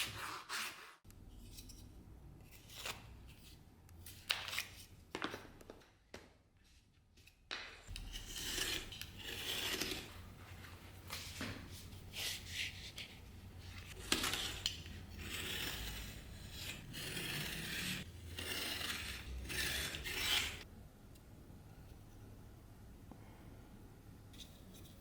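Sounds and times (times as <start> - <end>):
file scraping back and forth: 7.9 - 10.1, 13.8 - 20.7.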